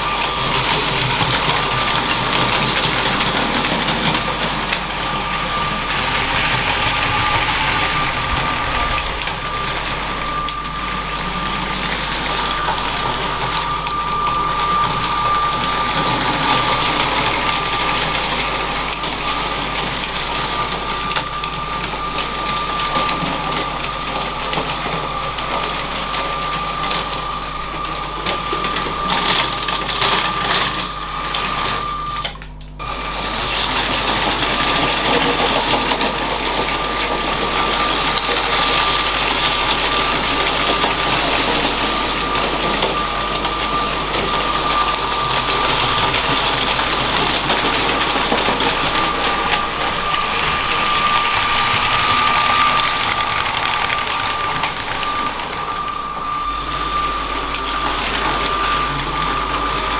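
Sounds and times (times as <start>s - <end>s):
small electric motor whining: 0.0s - 59.9s
toy train wheels rattling: 44.8s - 57.7s.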